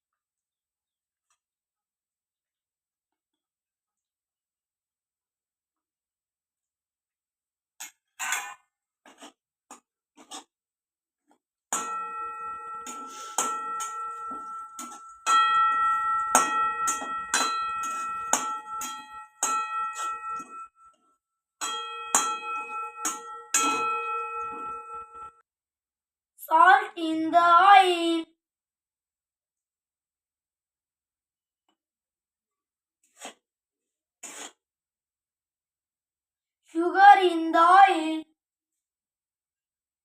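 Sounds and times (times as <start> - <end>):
metal spoon striking ringing pan: 11.8 - 20.8, 21.6 - 25.4.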